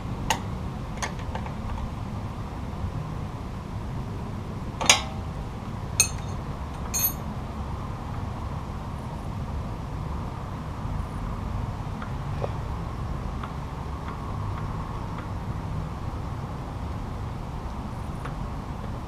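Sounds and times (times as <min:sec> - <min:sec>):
hand tools clinking on metal: 0:06.0 - 0:07.2.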